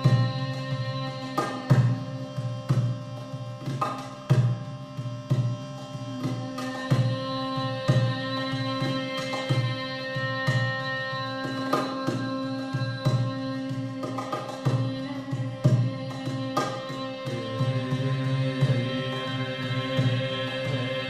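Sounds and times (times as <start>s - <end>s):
hand drum strokes and slaps: 3.6s - 5.5s, 14.0s - 17.0s.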